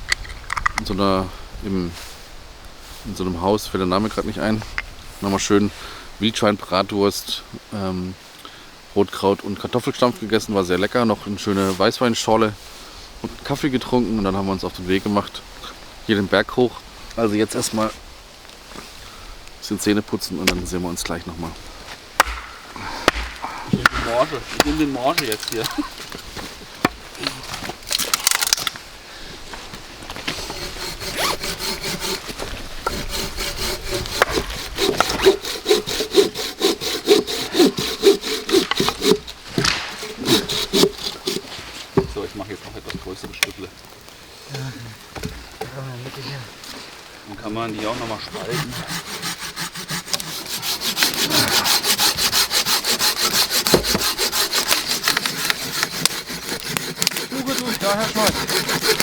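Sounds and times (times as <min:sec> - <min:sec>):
hand saw cutting wood: 0:22.2 - 0:26.2, 0:30.1 - 0:41.8, 0:47.7 - 0:59.0.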